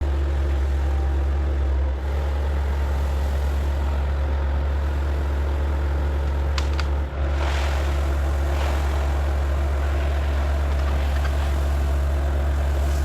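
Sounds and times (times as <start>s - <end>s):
excavator diesel engine droning: 0.0s - 13.0s.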